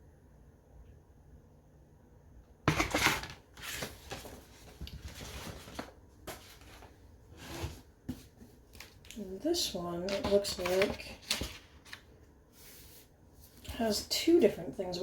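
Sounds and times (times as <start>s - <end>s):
paper rustling: 2.7s - 7.0s, 10.0s - 13.8s.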